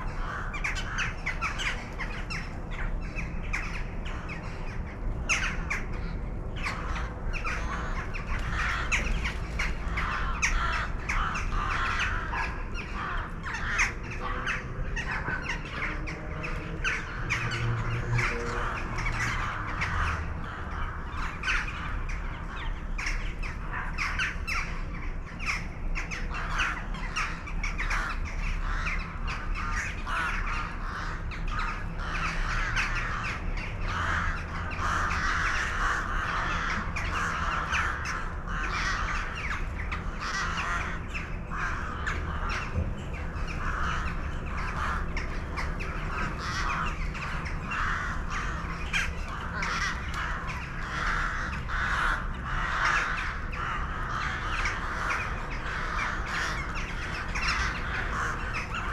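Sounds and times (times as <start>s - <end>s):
flock of birds calling: 0.0s - 58.9s.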